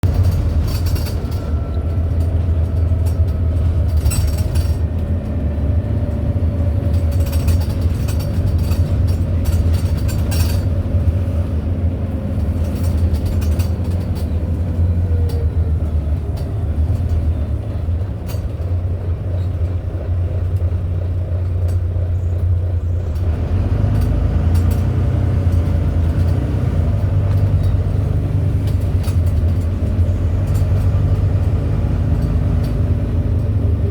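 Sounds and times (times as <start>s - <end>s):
bus engine rumbling with whine: 0.0s - 33.9s.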